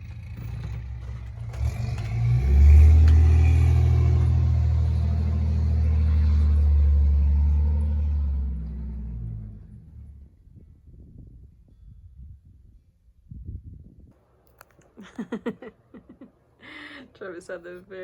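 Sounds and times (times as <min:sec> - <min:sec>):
snowplow truck engine under load: 0:00.0 - 0:10.3.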